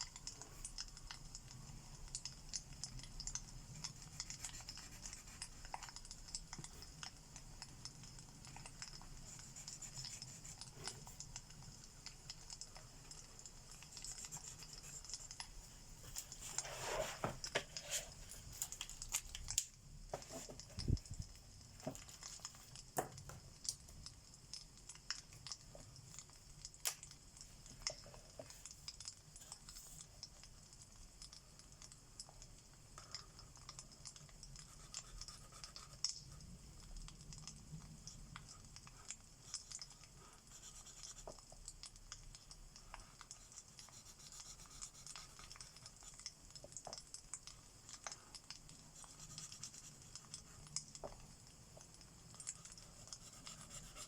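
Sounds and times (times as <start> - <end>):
fireplace crackling and popping: 17.7 - 29.8
marker scratching on paper: 52.9 - 54.0.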